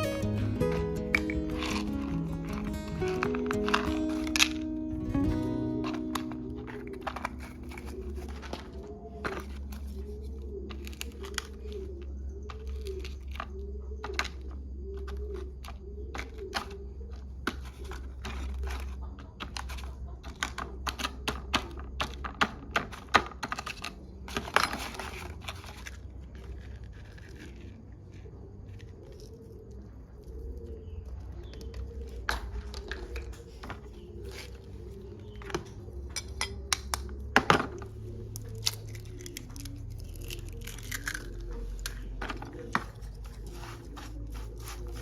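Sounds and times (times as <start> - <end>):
rustling: 0.0 - 13.4, 37.7 - 45.0
dove cooing: 0.0 - 22.2, 28.2 - 45.0.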